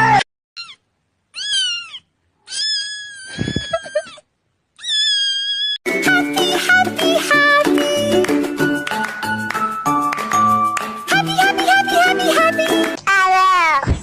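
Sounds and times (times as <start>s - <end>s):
cat meowing: 0.6s - 4.2s, 4.8s - 5.8s
music: 5.9s - 13.0s.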